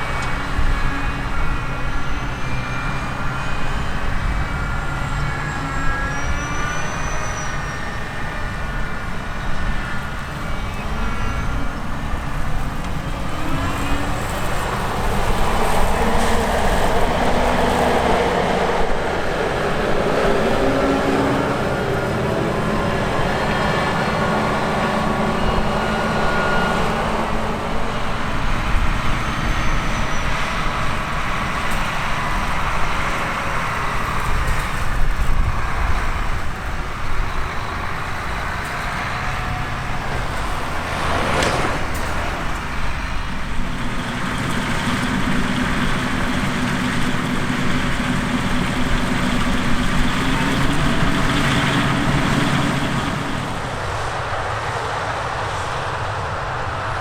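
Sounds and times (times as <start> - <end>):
diesel engine drone: 0.0 - 57.0
rushing sweep of noise: 13.1 - 31.3.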